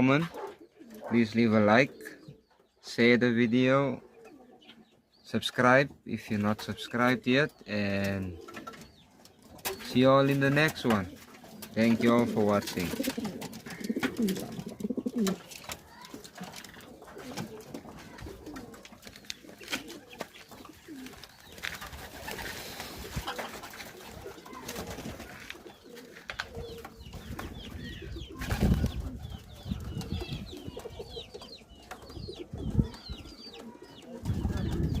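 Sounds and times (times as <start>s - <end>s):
pigeons cooing: 0.0s - 2.8s, 3.8s - 5.2s, 6.6s - 35.0s
clicks and rustles: 8.4s - 24.5s, 25.1s - 27.0s.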